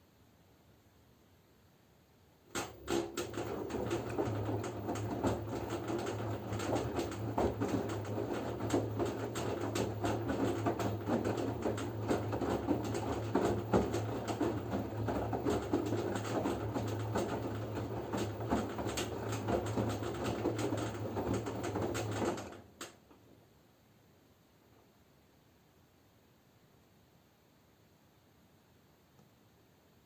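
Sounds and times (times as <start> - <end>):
washing machine click: 2.5 - 8.1
washing machine drum swishing: 2.5 - 22.8
washing machine motor hum: 2.5 - 22.9.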